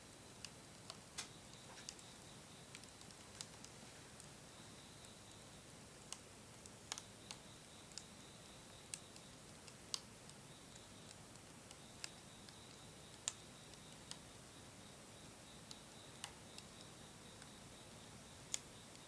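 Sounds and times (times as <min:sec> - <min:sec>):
faint steady hiss: 0:00.0 - 0:19.0
wood fire crackling: 0:00.0 - 0:19.0.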